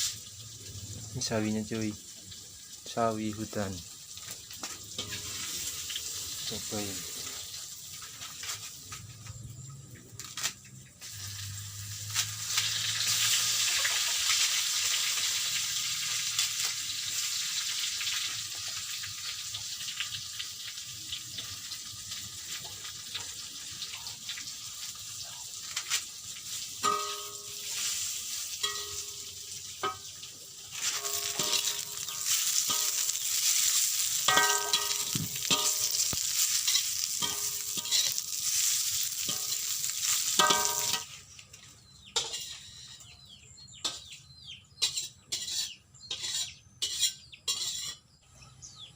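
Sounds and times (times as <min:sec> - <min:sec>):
greens sizzling in a pan: 0:00.0 - 0:43.0, 0:44.8 - 0:48.0
metal spatula scraping pan: 0:05.0 - 0:05.7, 0:26.8 - 0:30.1, 0:30.7 - 0:41.2, 0:42.2 - 0:43.0, 0:44.8 - 0:48.2.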